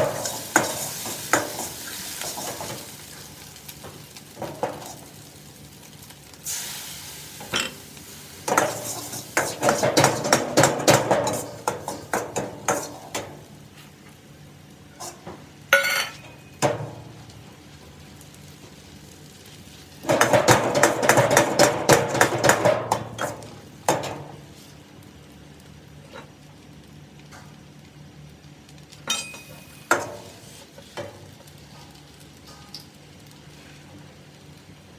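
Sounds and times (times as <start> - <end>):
light sizzling: 0.0 - 34.9
metal spatula scraping wok: 8.5 - 13.3
ringing metal clink: 15.7 - 16.4, 29.1 - 29.8.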